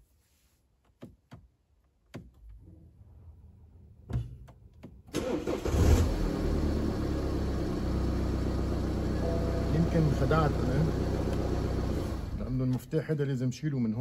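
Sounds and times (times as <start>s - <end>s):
car engine starting and idling: 4.4s - 13.4s.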